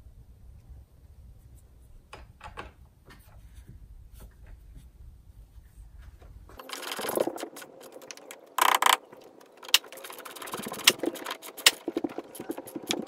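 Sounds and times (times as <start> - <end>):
metal tools clinking: 6.6 - 13.0
ratchet wrench clicking: 7.9 - 9.0, 9.6 - 13.0.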